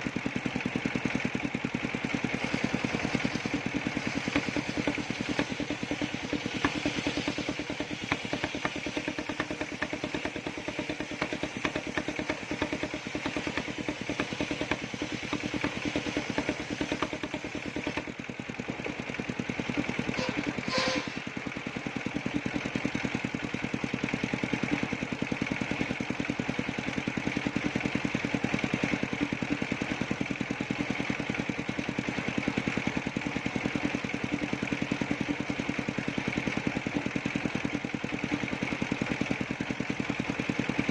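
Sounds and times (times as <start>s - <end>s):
sawmill engine running: 0.0s - 40.9s
brief sharp sound: 20.2s - 21.3s.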